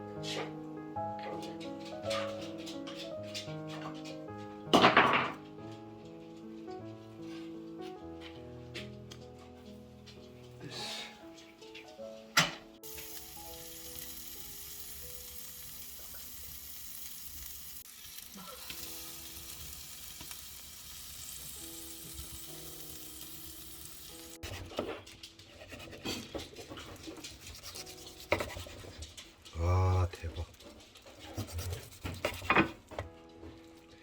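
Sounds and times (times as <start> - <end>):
soft background music: 0.0 - 17.8, 18.7 - 34.0
kitchen clicks and knocks: 1.2 - 5.6, 12.3 - 12.8, 30.6 - 33.6
food sizzling in a pan: 12.8 - 24.9.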